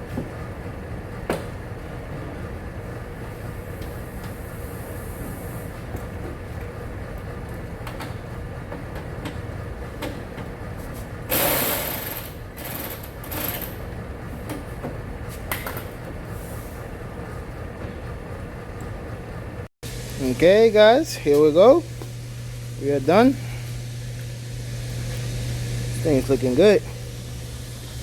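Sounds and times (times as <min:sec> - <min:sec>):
workshop hum: 0:00.0 - 0:28.0.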